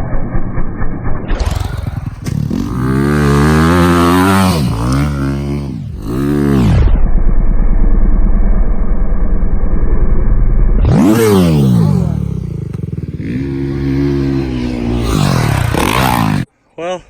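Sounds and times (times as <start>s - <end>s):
dirt bike engine revving: 0.6s - 7.0s, 10.8s - 16.5s.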